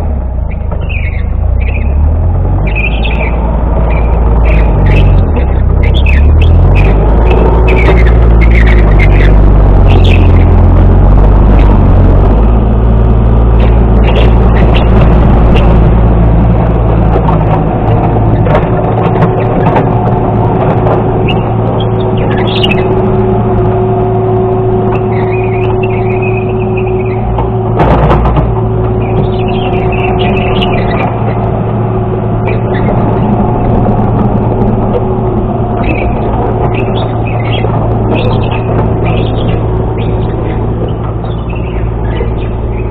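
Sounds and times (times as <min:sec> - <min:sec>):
excavator engine running: 0:00.0 - 0:42.9
metal clanks and knocks: 0:27.3 - 0:29.7.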